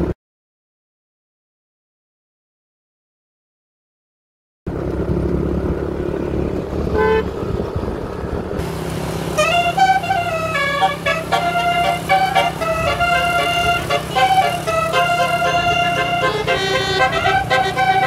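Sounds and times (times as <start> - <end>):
bus engine humming: 4.7 - 18.0
multi-tone horn playing tune: 7.0 - 7.3, 9.3 - 18.0
short horn toot: 9.4 - 18.0.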